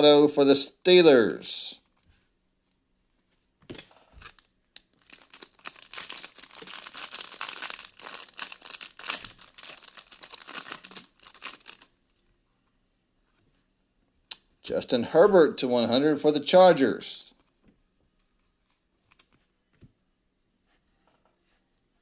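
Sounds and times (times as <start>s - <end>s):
foil wrapper tearing and crinkling: 4.2s - 11.9s.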